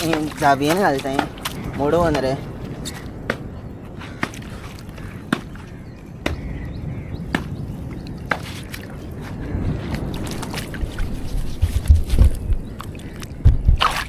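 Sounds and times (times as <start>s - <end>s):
water sloshing: 0.0s - 6.6s, 7.2s - 14.0s
sharp slaps or knocks: 7.3s - 7.6s.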